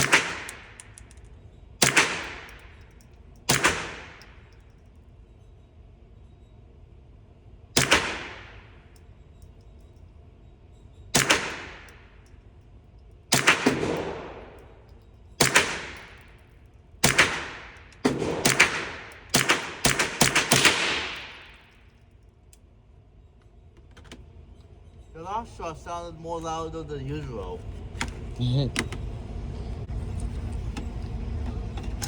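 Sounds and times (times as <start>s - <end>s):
gunshots: 0.0s - 1.0s, 1.8s - 2.7s, 3.5s - 4.4s, 7.8s - 8.8s, 11.2s - 12.1s, 13.3s - 14.8s, 15.4s - 16.3s, 17.0s - 21.7s.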